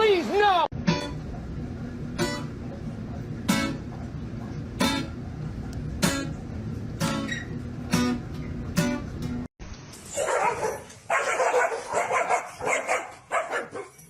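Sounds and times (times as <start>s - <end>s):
steady low backing: 0.8s - 9.5s
strummed guitar chords: 0.8s - 9.5s.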